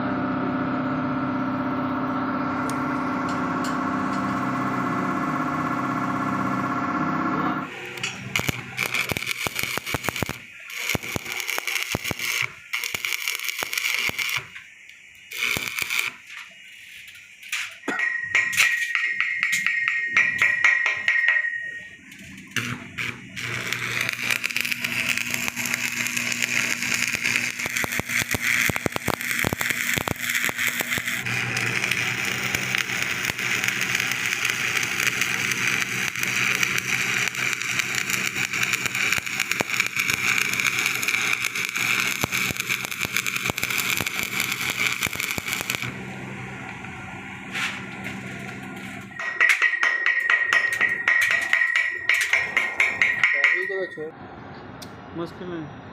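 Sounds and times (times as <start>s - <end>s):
arc welding crackling sizzle: 7.6s - 21.3s, 21.9s - 49.9s
high whine with rapid clicks: 7.6s - 46.0s.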